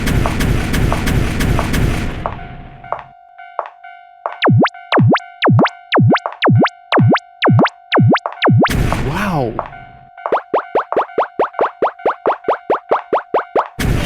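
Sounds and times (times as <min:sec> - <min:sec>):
electronic music with steady beat: 0:04.3 - 0:14.0
steady electronic tone: 0:04.4 - 0:13.8.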